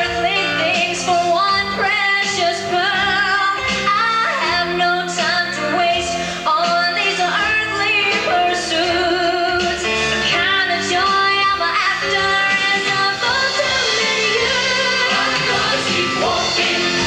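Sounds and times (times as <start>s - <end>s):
person singing with vibrato: 0.1s - 17.0s
instrumental backing: 0.4s - 17.0s.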